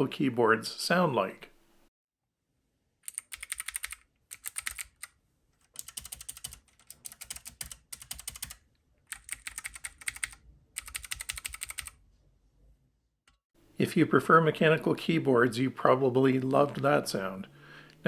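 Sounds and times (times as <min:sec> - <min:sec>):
mechanical keyboard typing: 0:03.1 - 0:12.0.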